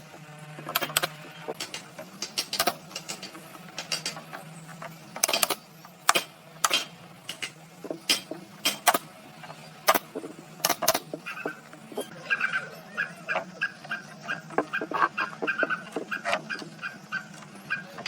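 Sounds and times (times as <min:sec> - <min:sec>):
hand tools knocking wood: 0:13.4 - 0:18.0.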